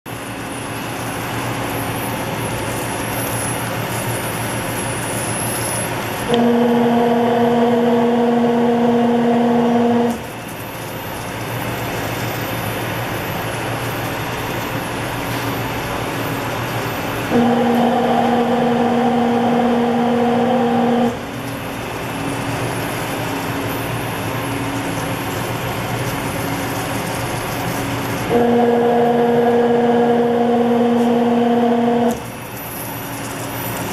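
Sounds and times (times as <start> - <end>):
pitched hum: 6.2 - 10.5, 16.9 - 26.0, 26.7 - 32.5.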